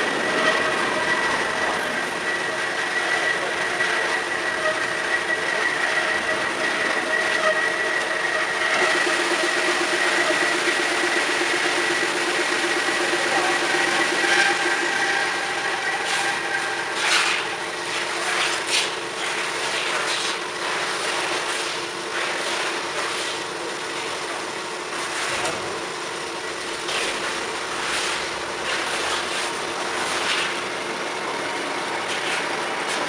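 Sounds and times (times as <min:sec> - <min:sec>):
band saw running: 0:00.0 - 0:33.0.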